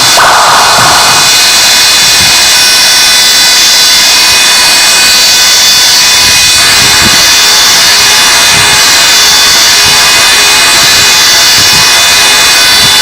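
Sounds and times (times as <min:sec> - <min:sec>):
steady high tones: 0:00.0 - 0:02.8
harsh noise music hiss: 0:00.0 - 0:13.0.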